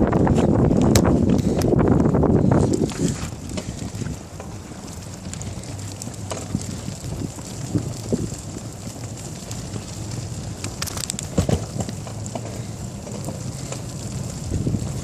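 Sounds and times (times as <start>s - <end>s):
bicycle rumbling through snow: 0.0s - 15.0s
wind buffeting microphone: 0.0s - 15.0s
clicks and rattles: 10.6s - 13.8s.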